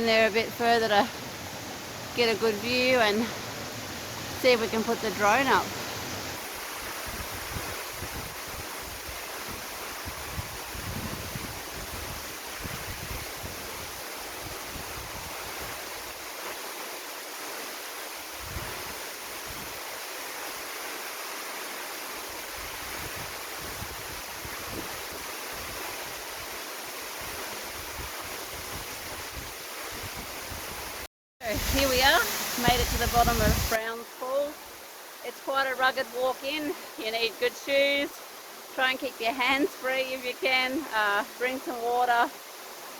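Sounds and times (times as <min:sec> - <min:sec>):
waterfall rushing: 0:00.0 - 0:42.9
wind rumble on microphone: 0:07.0 - 0:15.8, 0:18.4 - 0:19.8, 0:22.6 - 0:25.9, 0:27.2 - 0:33.8.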